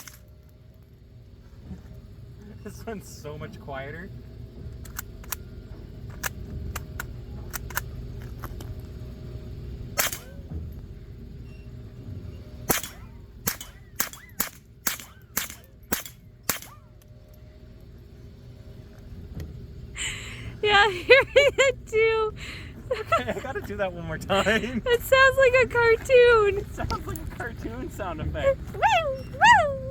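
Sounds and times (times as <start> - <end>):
bullets ricocheting whine: 9.8 - 10.7, 11.4 - 17.5
rifle shots: 10.0 - 10.4, 12.7 - 16.9.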